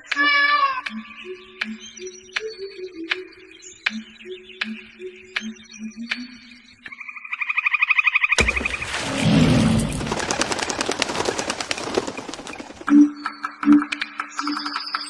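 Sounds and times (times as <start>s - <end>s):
loud rushing crackling noise: 8.8s - 12.9s.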